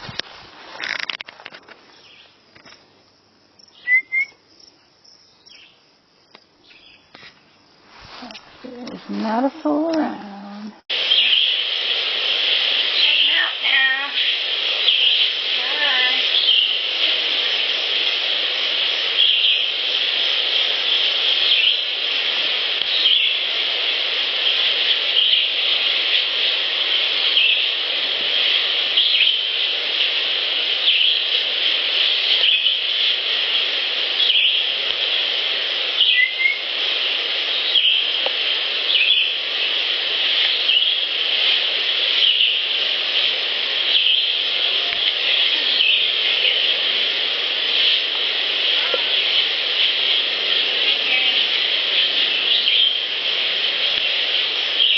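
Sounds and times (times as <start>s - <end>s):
outdoor wildlife chorus: 0.7s - 10.2s, 10.8s - 54.9s
short bird calls: 3.8s - 4.4s, 11.1s - 11.6s, 34.2s - 34.7s, 36.0s - 36.7s.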